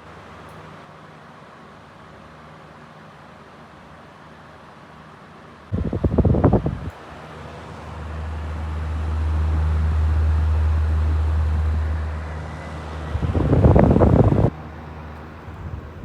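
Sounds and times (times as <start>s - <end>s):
box fan air rumble on microphone: 5.7s - 16.0s.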